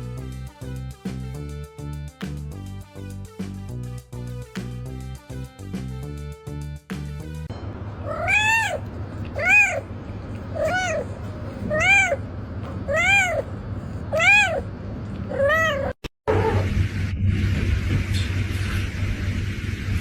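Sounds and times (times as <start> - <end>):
cat meowing: 8.0 - 12.2, 12.8 - 16.0.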